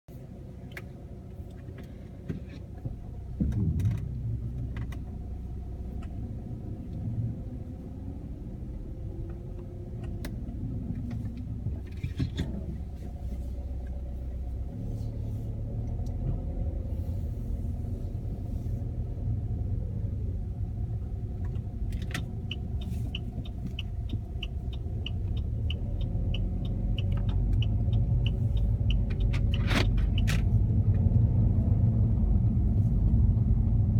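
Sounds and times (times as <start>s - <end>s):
car engine rumbling: 0.1s - 33.9s
even ticking: 22.2s - 30.3s.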